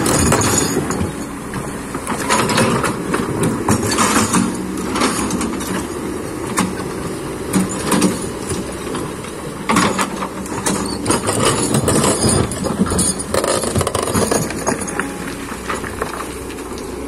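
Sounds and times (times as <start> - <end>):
excavator diesel engine running: 0.0 - 17.0
knocks and scrapes: 7.6 - 17.0
bucket digging stones and mud: 9.7 - 17.0.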